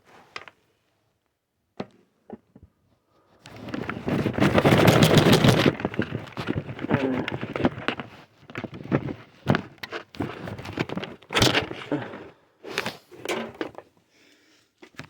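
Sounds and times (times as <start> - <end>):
handling noise on microphone: 3.3 - 13.9.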